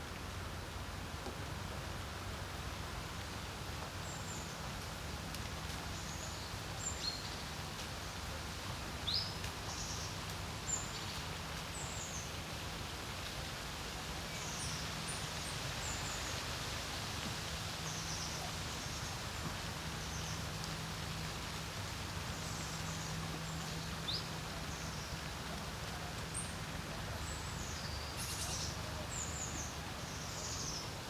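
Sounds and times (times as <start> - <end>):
small birds chirping: 22.1 - 31.0.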